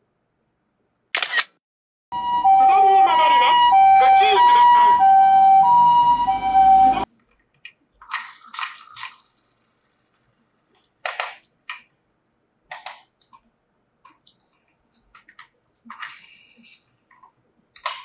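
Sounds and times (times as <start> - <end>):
toy two-tone electronic siren: 2.2 - 7.1.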